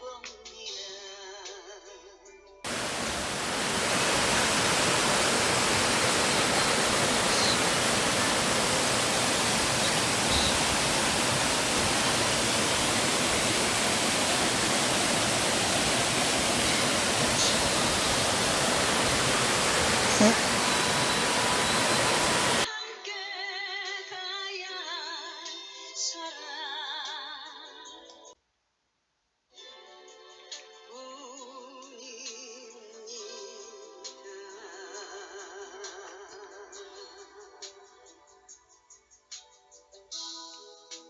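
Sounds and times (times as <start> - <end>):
loud steady rushing noise: 2.7 - 22.7.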